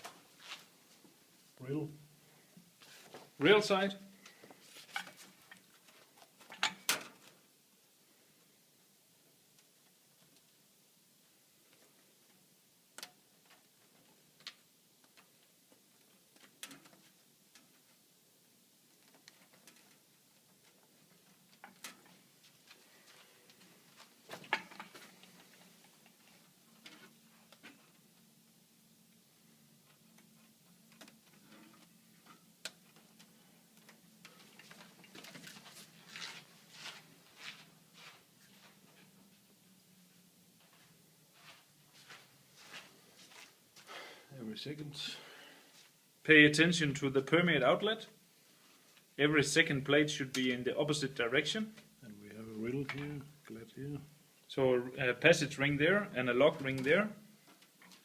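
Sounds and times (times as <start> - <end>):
short rustling scrapes: 0.0 - 1.0, 34.8 - 39.1.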